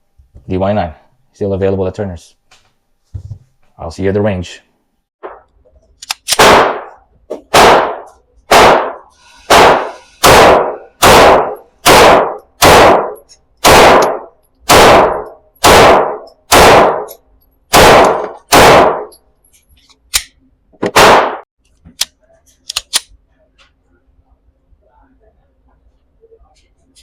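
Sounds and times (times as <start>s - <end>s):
pistol shots: 6.3s - 19.2s, 20.8s - 21.4s.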